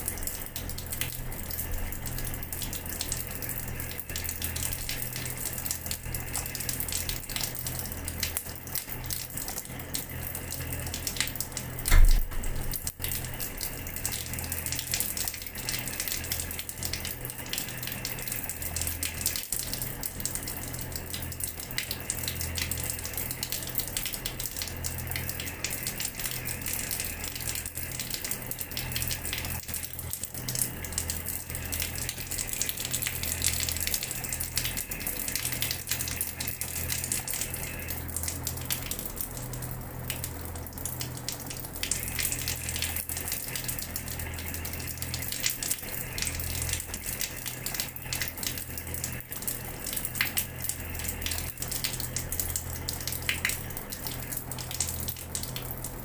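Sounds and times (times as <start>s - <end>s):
tap water splashing on floor: 11.1s - 13.2s.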